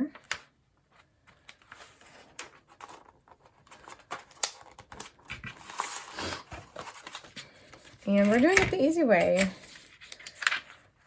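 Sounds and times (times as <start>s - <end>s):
paper taps and rustles: 6.5s - 10.7s.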